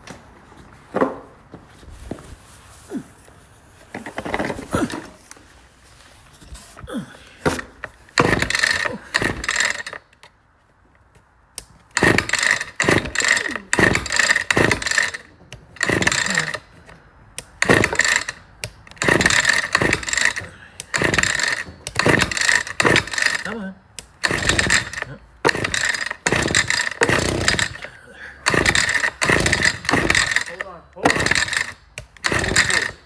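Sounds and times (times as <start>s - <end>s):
small engine pull-start cranking: 4.0s - 5.1s, 7.4s - 10.3s, 11.6s - 33.0s.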